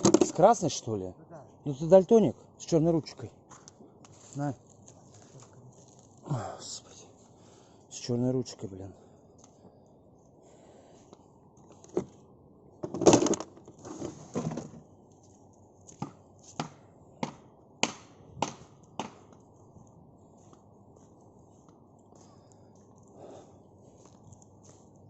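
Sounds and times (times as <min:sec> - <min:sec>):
clatter of wood: 0:00.0 - 0:00.4, 0:12.8 - 0:14.8
hammer striking wooden boards: 0:16.6 - 0:19.2.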